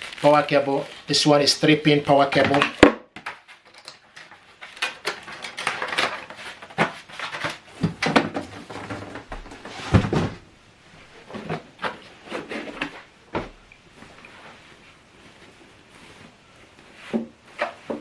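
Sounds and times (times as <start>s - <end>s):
cardboard rustling and scraping: 0.0s - 18.0s.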